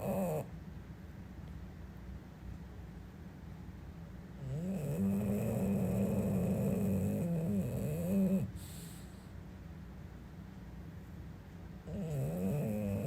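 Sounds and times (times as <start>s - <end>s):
dog snoring: 0.0s - 0.5s, 4.4s - 9.3s, 11.8s - 13.0s.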